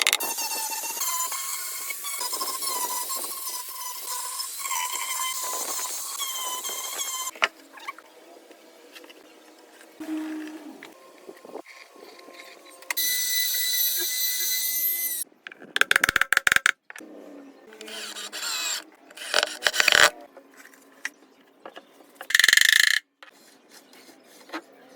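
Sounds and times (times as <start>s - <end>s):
power tool whine: 0.2s - 7.4s, 12.9s - 15.2s.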